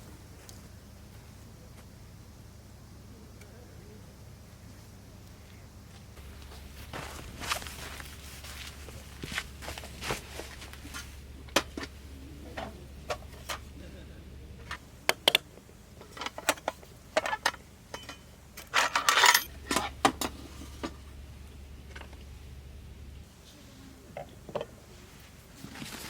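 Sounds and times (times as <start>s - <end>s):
clattering: 6.2s - 15.4s, 16.0s - 21.2s.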